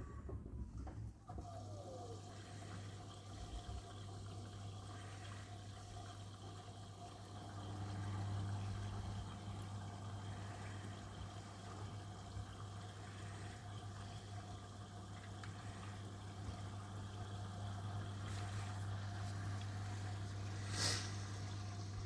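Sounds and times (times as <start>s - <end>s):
low machine hum: 0.0s - 22.0s
washing machine motor whine: 0.0s - 22.0s
water running in: 1.3s - 22.0s.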